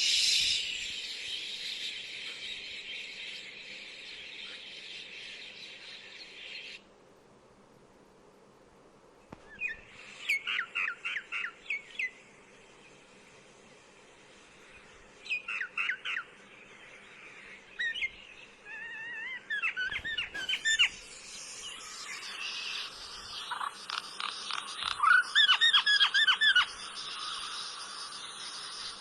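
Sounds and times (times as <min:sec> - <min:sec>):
steady hiss: 0:00.0 - 0:29.0
myna chirping and whistling: 0:17.8 - 0:27.8.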